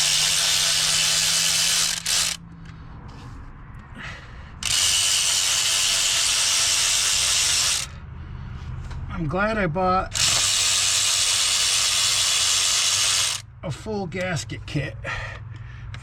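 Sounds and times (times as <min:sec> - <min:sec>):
handheld power tool running: 0:00.0 - 0:02.4, 0:04.6 - 0:07.9, 0:10.1 - 0:13.4.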